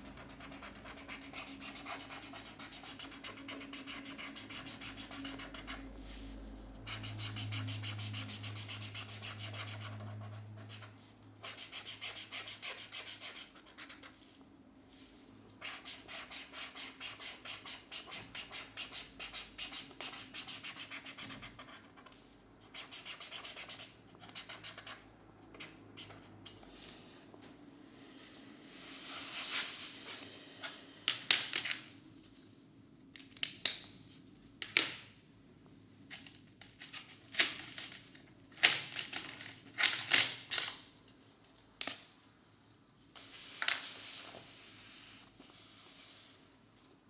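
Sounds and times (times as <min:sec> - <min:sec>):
markers scratching on paper: 0:00.2 - 0:05.9.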